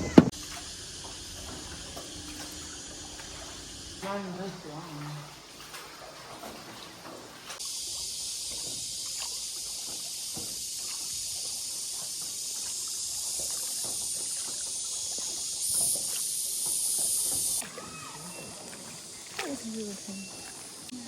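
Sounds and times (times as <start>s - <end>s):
high-pitched hiss: 7.6s - 18.2s.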